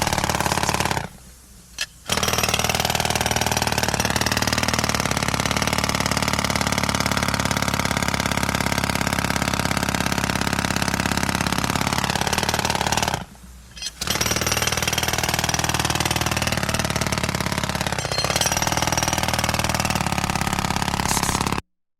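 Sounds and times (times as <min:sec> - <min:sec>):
pneumatic air hammer hammering: 0:00.0 - 0:01.2, 0:01.8 - 0:06.2, 0:09.8 - 0:21.6.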